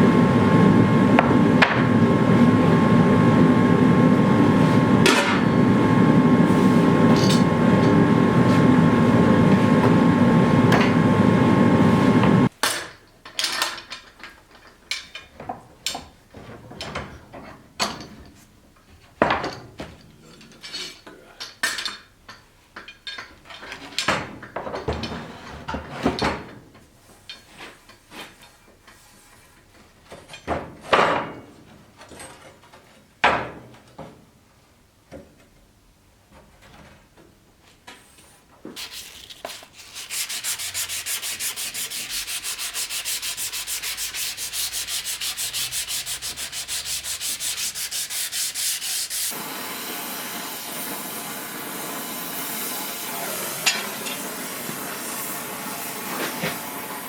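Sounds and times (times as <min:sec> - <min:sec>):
forge roaring with hum: 0:00.0 - 0:12.5.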